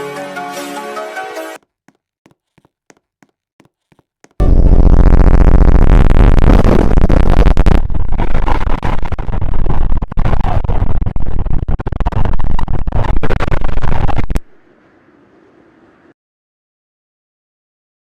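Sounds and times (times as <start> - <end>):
harsh distorted buzz and crackle: 4.4 - 14.6.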